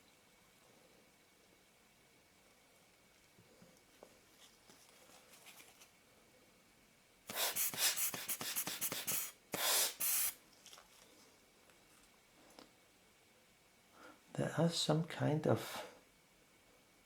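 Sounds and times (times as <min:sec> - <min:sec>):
rubber air blower puffing: 0:07.3 - 0:10.4.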